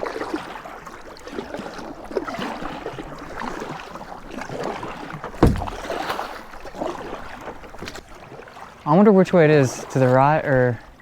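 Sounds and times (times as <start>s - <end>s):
paddle strokes in water: 0.0s - 11.0s
light knocks: 5.4s - 6.0s.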